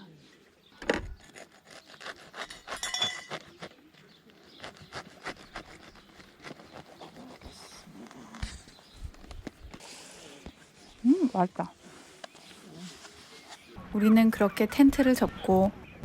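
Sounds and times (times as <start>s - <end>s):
utensils clinking on dishes: 2.4s - 3.6s
ringing clink: 2.8s - 3.3s.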